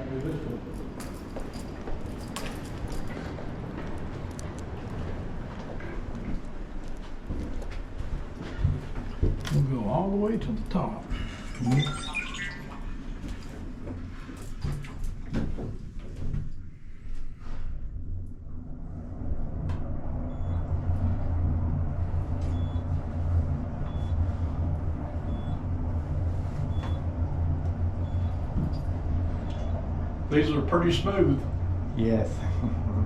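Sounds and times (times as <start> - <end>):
elevator low hum: 0.0 - 33.0
faint short high beeps: 11.6 - 12.7.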